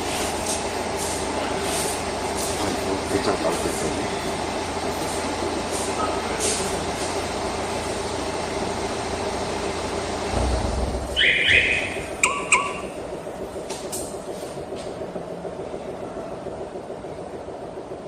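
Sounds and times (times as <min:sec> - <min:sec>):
low rumble: 0:10.3 - 0:12.2
car alarm chirp: 0:11.1 - 0:13.1
sharp beeps: 0:11.2 - 0:13.0.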